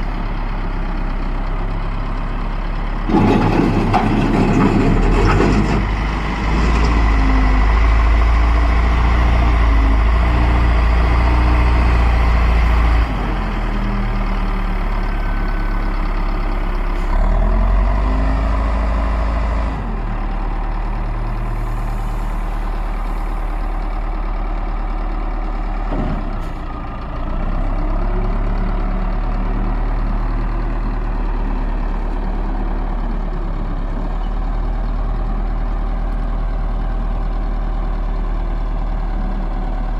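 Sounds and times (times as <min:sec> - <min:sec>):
diesel engine revving: 0:03.0 - 0:34.9.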